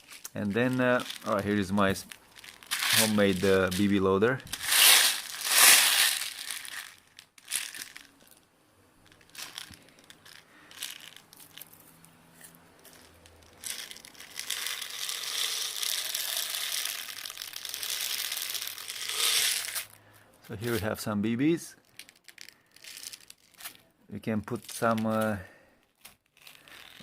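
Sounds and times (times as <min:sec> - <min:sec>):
crinkling and rustling: 0:00.0 - 0:08.4, 0:09.0 - 0:27.0.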